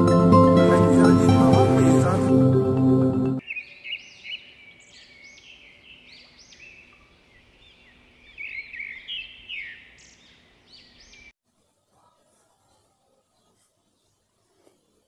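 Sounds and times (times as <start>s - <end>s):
recorded birdsong from phone speaker: 3.4s - 11.4s.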